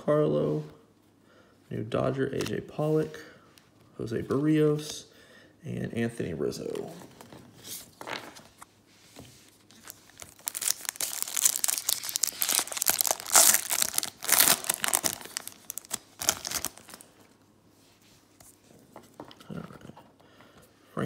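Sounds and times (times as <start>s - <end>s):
wrapper tearing and crinkling: 9.7s - 17.1s.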